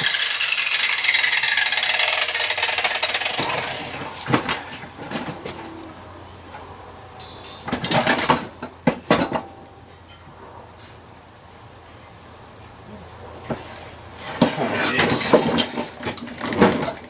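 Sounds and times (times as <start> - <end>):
metal tools clanking: 0.0 - 5.9, 14.2 - 17.0.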